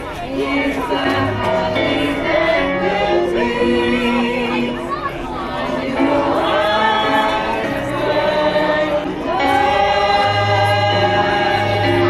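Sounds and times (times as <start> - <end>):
group singing a carol: 0.0 - 12.0.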